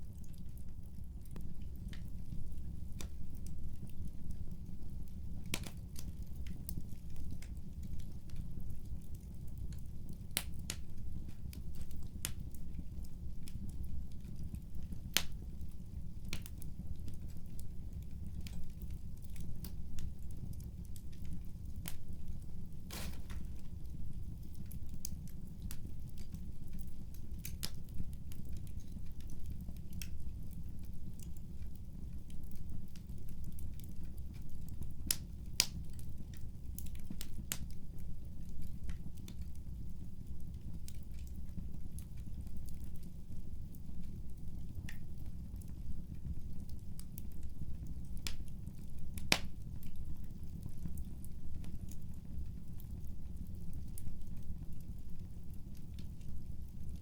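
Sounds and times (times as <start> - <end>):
fire crackling and popping: 0.0 - 57.0.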